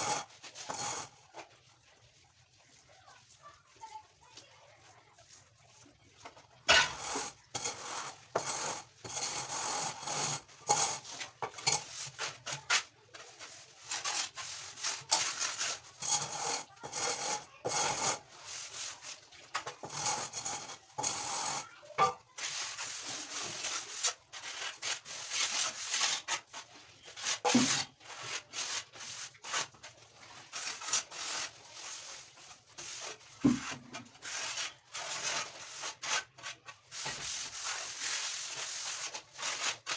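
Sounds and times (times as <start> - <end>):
sandpaper rasping on wood: 0.0 - 1.2, 7.0 - 19.2, 22.4 - 29.8, 30.4 - 39.9.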